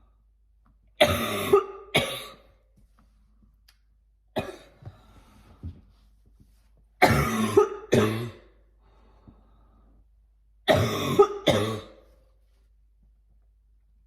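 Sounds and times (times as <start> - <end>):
person coughing hard: 1.0 - 2.6, 4.4 - 4.8, 7.0 - 8.6, 10.7 - 12.1.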